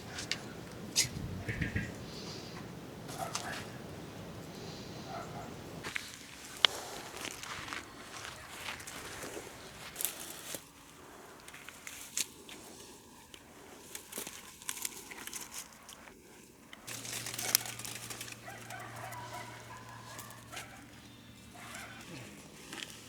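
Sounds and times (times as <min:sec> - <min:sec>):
crinkling and rustling handling: 0:05.8 - 0:23.0.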